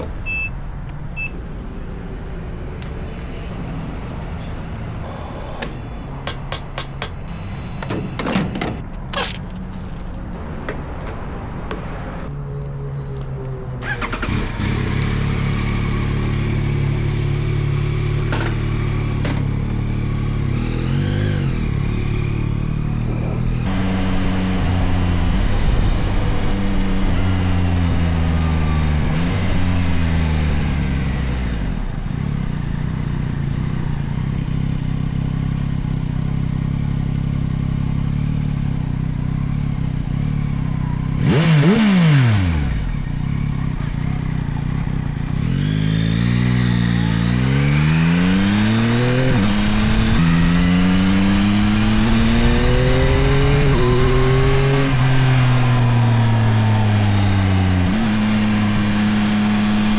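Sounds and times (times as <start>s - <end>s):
motorcycle engine running: 13.2s - 59.9s.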